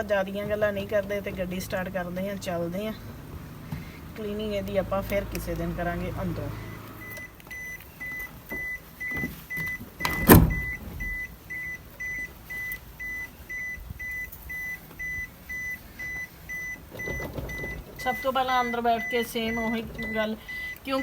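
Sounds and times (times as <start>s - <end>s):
car warning chime beeping: 0.0s - 21.0s
car door shutting: 2.4s - 4.2s, 6.6s - 12.3s, 13.7s - 20.6s.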